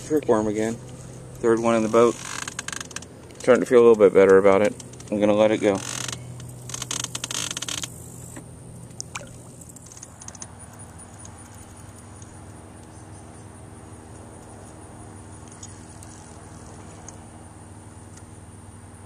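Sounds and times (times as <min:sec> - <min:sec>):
steady low hum: 0:00.0 - 0:19.0
high-pitched insect buzz: 0:01.0 - 0:03.1, 0:05.7 - 0:08.4.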